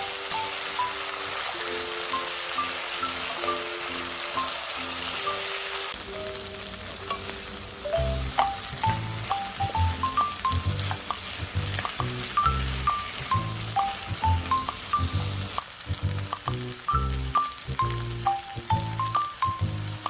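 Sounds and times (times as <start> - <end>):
background music: 0.0 - 20.0
food sizzling in a pan: 0.0 - 20.0
stirring in a pan: 6.6 - 16.9.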